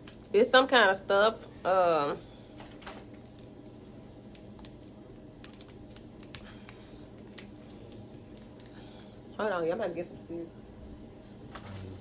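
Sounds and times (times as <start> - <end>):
plastic snack package crackling: 4.3 - 8.9.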